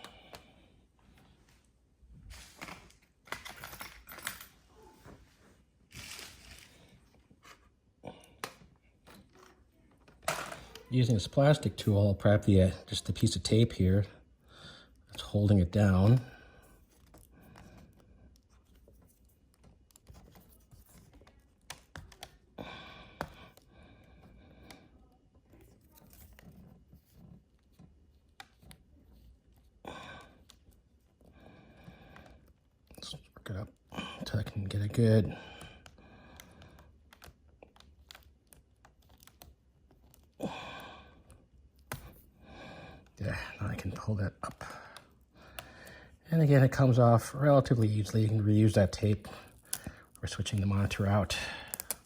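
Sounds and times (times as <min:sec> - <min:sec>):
hands handling plastic laptop parts: 0:02.3 - 0:10.9, 0:14.9 - 0:52.0
plastic pry tool clicking and scraping: 0:47.6 - 0:52.0.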